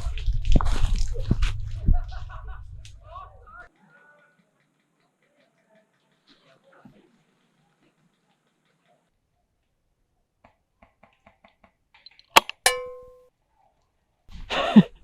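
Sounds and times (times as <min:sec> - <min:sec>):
ringing metallic clang: 0:12.5 - 0:13.2.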